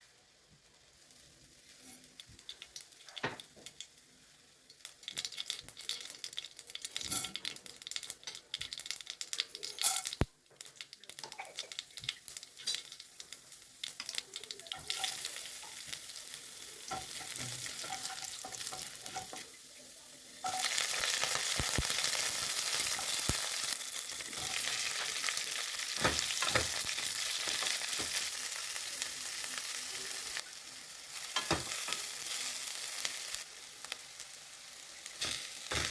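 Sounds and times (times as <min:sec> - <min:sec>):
food frying in hot oil: 0:00.0 - 0:35.9.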